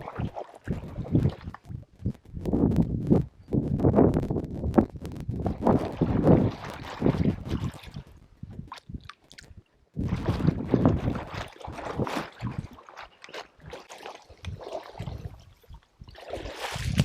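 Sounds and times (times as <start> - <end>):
water sloshing and splashing: 0.0 - 1.8, 5.4 - 17.0.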